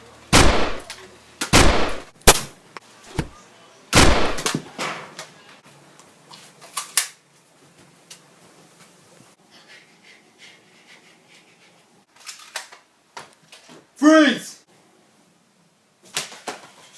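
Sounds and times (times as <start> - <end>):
gunshots: 0.3 - 0.9, 1.5 - 2.6, 4.0 - 4.6.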